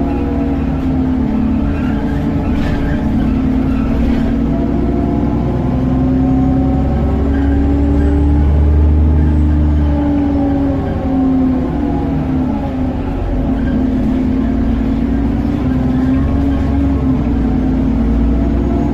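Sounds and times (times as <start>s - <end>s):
bus engine running: 0.0s - 18.9s.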